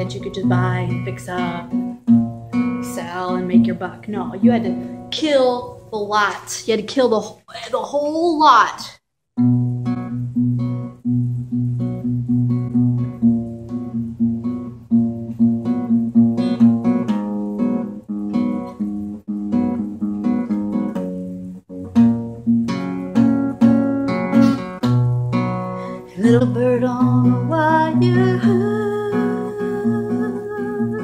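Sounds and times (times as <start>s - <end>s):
acoustic guitar strumming: 0.0s - 7.3s, 9.4s - 31.0s.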